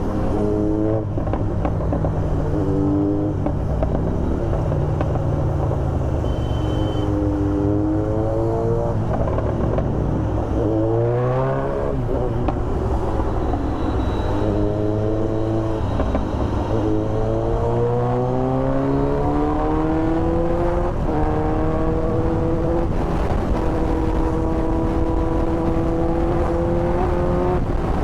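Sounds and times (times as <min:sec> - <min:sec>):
wind noise: 0:07.4 - 0:28.0.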